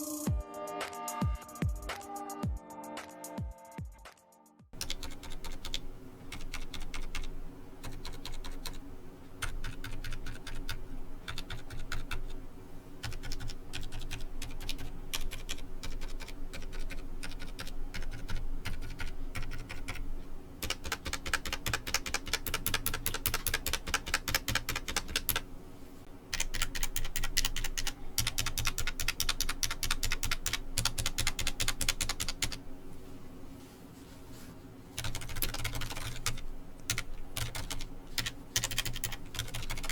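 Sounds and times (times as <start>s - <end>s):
keyboard typing: 4.8s - 12.4s, 13.0s - 25.4s, 26.3s - 32.6s, 35.0s - 39.9s.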